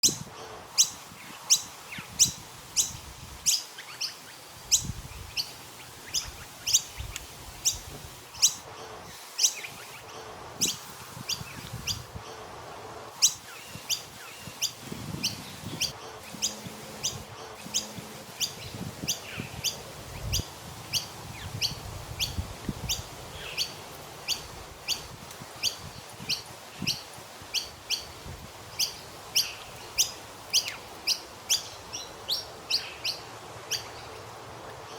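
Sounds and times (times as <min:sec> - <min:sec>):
bird chirping sharply: 0:13.2 - 0:20.4.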